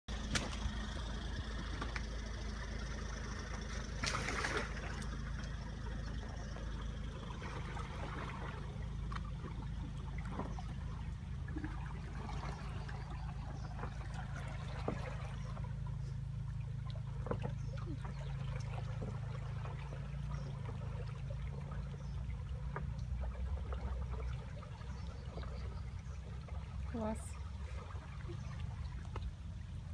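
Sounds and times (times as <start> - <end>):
car engine humming: 0.1 - 29.9
water splashing and trickling: 0.1 - 29.9.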